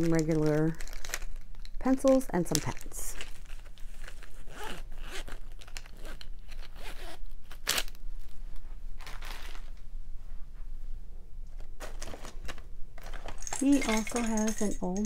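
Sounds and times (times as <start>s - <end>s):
plastic packaging crinkling: 0.0s - 6.8s, 9.0s - 9.8s.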